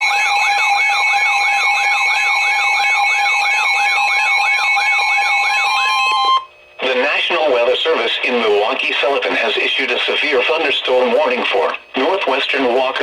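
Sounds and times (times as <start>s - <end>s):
sweeping siren-like alarm tone: 0.0s - 6.5s.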